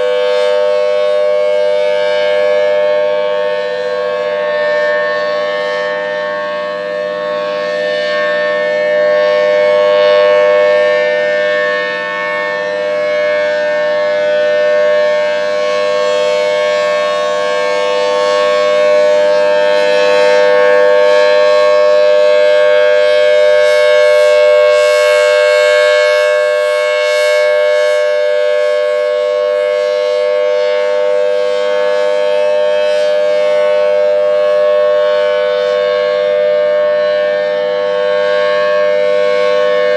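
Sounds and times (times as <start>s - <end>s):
tornado siren dual tone: 0.0s - 39.9s.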